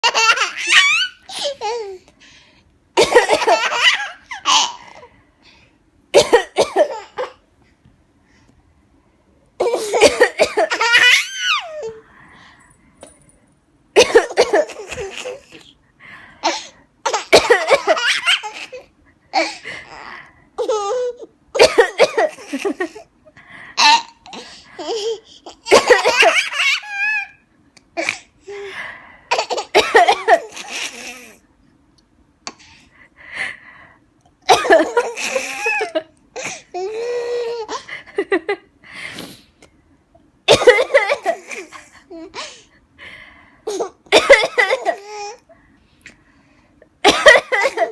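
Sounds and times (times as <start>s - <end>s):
child coughing: 3.0s - 4.8s, 6.2s - 7.4s, 9.6s - 11.2s, 14.0s - 15.3s, 17.1s - 18.2s, 21.6s - 22.4s, 25.7s - 26.4s, 29.3s - 30.5s, 34.5s - 35.3s, 40.5s - 41.4s, 43.7s - 45.3s, 47.0s - 47.9s.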